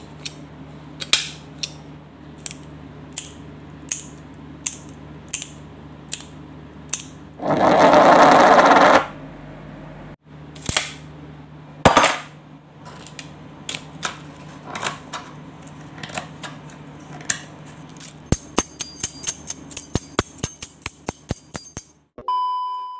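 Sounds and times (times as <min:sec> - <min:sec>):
bright metallic ringing: 0:18.3 - 0:22.0.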